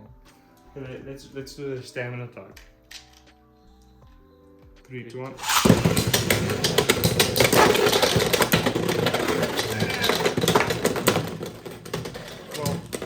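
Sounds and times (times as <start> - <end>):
spinning tops whirring: 5.4 - 11.2
spinning tops clicking and clacking: 5.4 - 13.0.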